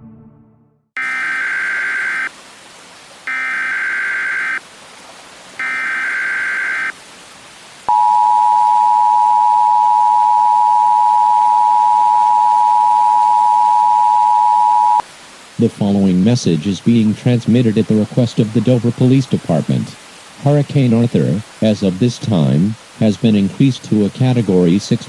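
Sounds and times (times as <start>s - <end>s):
buzzy data bursts: 1.0s - 2.3s, 3.3s - 4.6s, 5.6s - 7.0s
two-tone attention signal: 1.0s - 2.3s, 3.3s - 4.6s, 5.6s - 6.9s, 7.9s - 15.0s
faint hiss: 1.0s - 8.0s, 15.0s - 25.0s.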